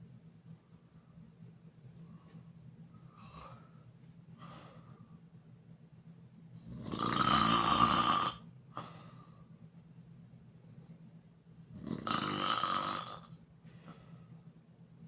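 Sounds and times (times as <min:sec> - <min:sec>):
person snoring: 0:06.7 - 0:08.4, 0:11.8 - 0:13.3.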